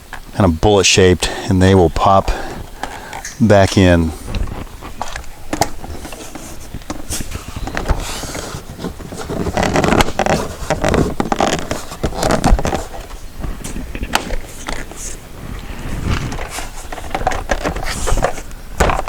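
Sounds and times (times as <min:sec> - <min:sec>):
plastic knocking and scraping: 0:04.2 - 0:19.0.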